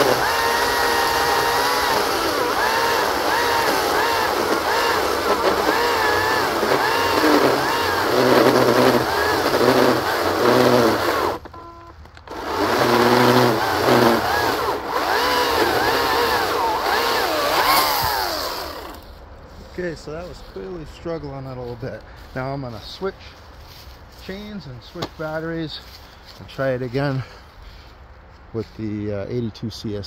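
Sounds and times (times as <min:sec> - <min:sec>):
electric chainsaw cutting log: 0:00.0 - 0:11.6, 0:12.2 - 0:19.2.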